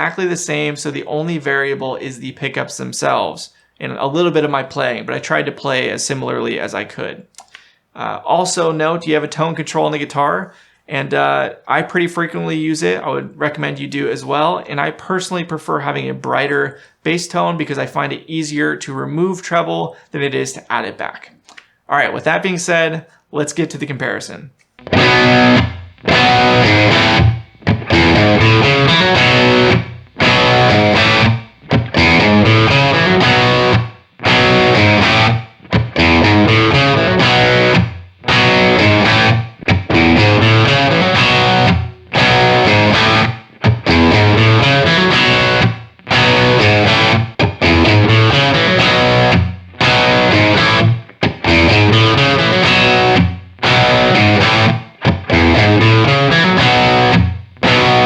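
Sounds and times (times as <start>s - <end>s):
electric guitar phrases: 24.8s - 58.0s.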